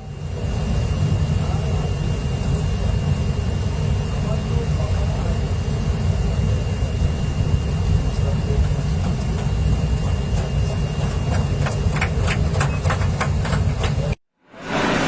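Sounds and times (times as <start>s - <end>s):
train rumbling in tunnel: 7.0s - 15.0s.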